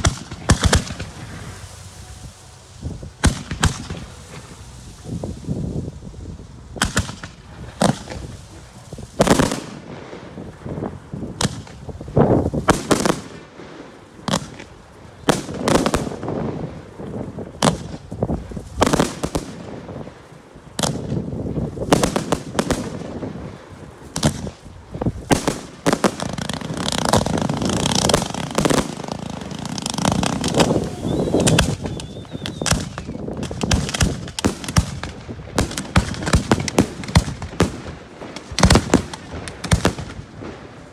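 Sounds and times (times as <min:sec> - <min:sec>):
firework shells bursting: 0:00.0 - 0:05.9, 0:06.7 - 0:10.2, 0:24.0 - 0:40.9
firework crackle: 0:00.0 - 0:40.9.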